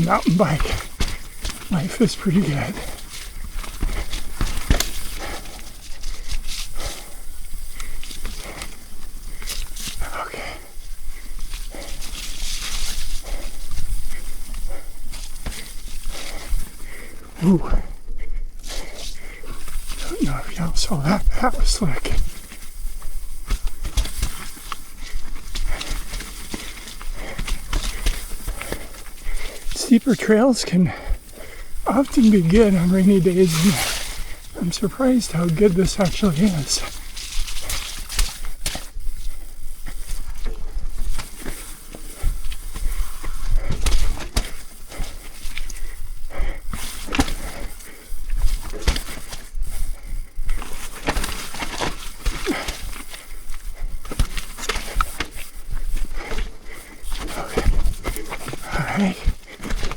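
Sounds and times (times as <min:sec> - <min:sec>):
bike tyres hissing: 0:00.0 - 0:59.9
bike knocking and rattling: 0:02.6 - 0:10.5, 0:22.2 - 0:29.8, 0:35.4 - 0:59.9.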